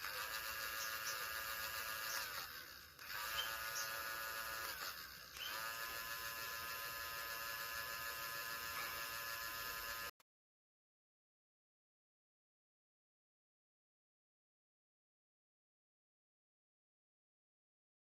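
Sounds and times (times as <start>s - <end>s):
electric whisk motor buzzing: 0.0s - 10.2s.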